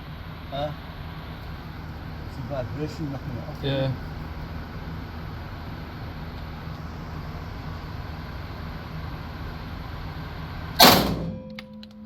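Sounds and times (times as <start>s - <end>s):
low hum: 0.0s - 12.0s
loud gunshot: 10.8s - 11.5s.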